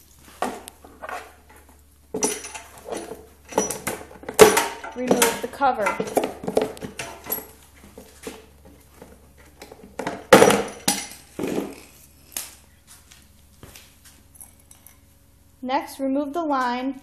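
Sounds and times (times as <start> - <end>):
plastic cover clattering and knocking: 2.1 - 11.9.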